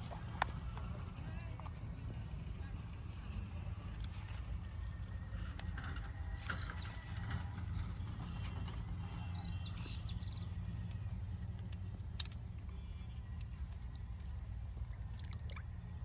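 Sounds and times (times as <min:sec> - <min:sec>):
low rumble: 0:00.0 - 0:16.0
light clicks: 0:09.9 - 0:14.4.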